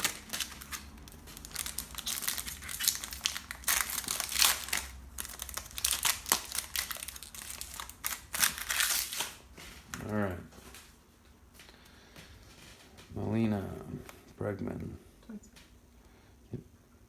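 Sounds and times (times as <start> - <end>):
plastic wrapper crinkling: 0.0 - 11.0.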